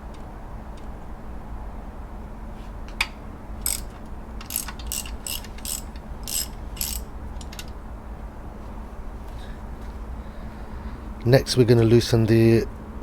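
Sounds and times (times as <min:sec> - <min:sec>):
ratchet wrench clicking: 0:03.0 - 0:07.8.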